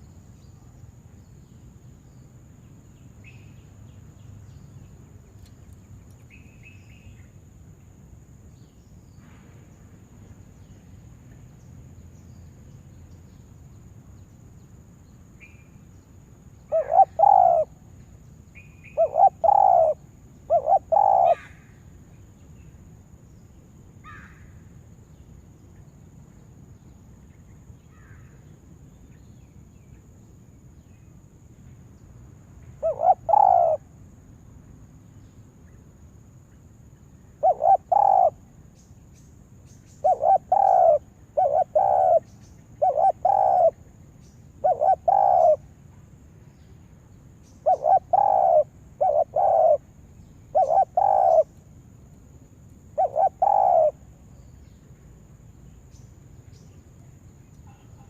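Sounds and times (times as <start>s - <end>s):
dove cooing: 16.7s - 17.8s, 19.0s - 21.5s, 32.8s - 33.8s, 37.4s - 38.4s, 40.0s - 43.8s, 44.6s - 45.6s, 47.6s - 49.8s, 50.5s - 51.5s, 53.0s - 54.0s.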